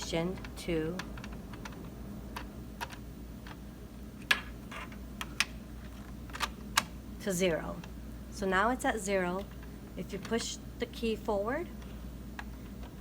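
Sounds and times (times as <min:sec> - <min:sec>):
cable lock clicks: 0:04.2 - 0:07.0.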